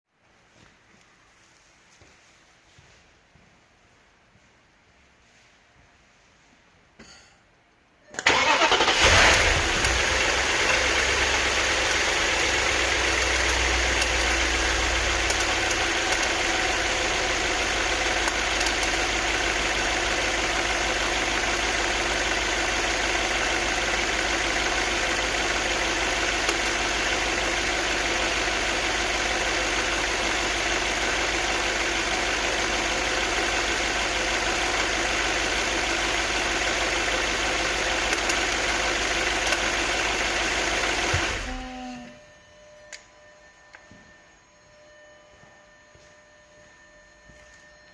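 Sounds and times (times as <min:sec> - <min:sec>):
car engine starting and idling: 0:08.2 - 0:42.1.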